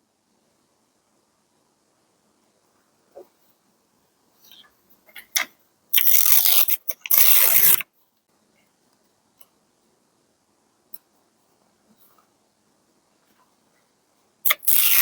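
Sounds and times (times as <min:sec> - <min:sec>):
paper ripping: 0:06.0 - 0:07.8, 0:14.5 - 0:15.0.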